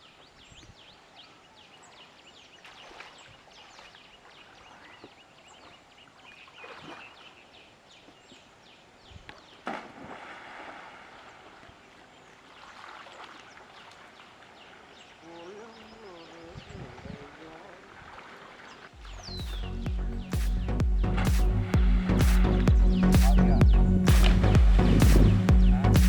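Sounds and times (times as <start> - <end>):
birds chirping: 0.0 - 9.8, 11.0 - 26.0
water splashing: 1.8 - 8.4, 9.3 - 26.0
loud splash: 9.6 - 11.6, 20.4 - 23.4, 24.0 - 26.0.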